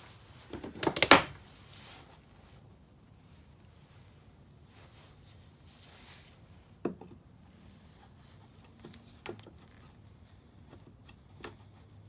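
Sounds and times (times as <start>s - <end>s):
hands clicking and knocking parts: 0.5s - 1.6s.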